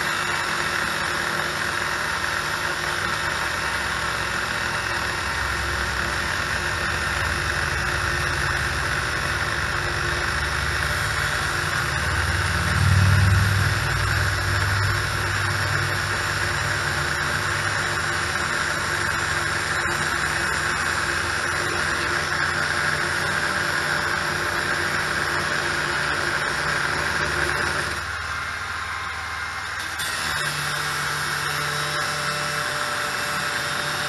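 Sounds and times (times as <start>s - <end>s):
grinder cutting through bolt: 0.0s - 34.0s
low hum: 6.2s - 17.8s.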